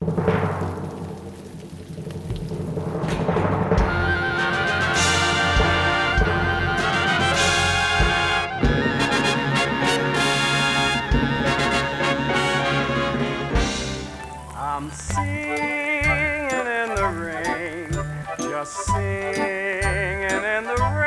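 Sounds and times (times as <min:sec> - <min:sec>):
drum hits: 0:02.4 - 0:14.4
brass sustained chords: 0:03.8 - 0:14.2.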